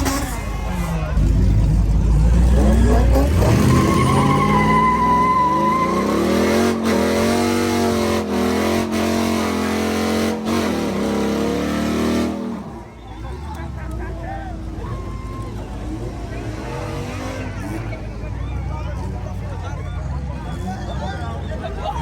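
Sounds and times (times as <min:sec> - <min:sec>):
car engine revving: 0:00.0 - 0:14.0, 0:15.6 - 0:18.8
tires squealing: 0:00.0 - 0:22.0.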